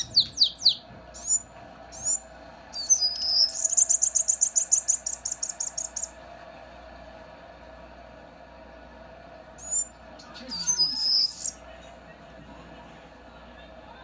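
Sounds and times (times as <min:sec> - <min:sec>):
small bird singing trill: 0:00.0 - 0:06.1, 0:09.6 - 0:11.6.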